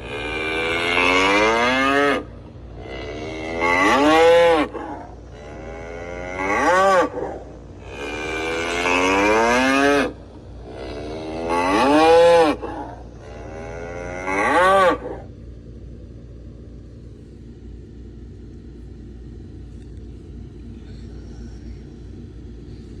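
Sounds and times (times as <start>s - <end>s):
bull bellowing: 0.0s - 15.4s
low steady hum: 0.0s - 23.0s.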